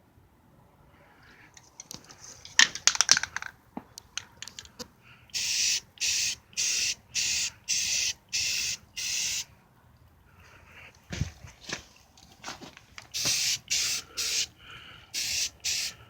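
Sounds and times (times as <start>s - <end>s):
aerosol can spraying: 5.4s - 9.5s, 13.1s - 14.5s, 15.2s - 16.0s.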